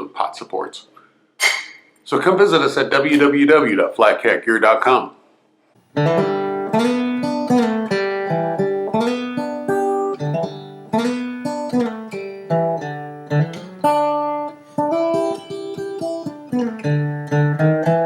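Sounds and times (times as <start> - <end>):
acoustic guitar picked and strummed: 5.8 - 18.0.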